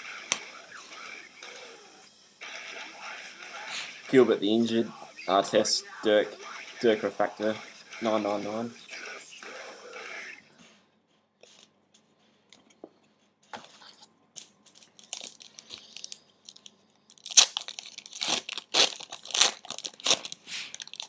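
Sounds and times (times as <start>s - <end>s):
card pack wrapper crinkling and tearing: 14.4s - 21.0s.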